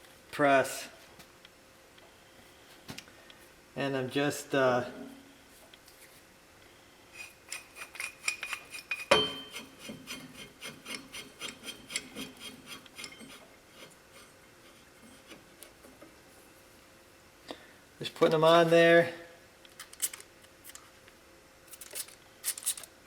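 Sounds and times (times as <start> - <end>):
metal clank and ring: 8.3 - 9.7.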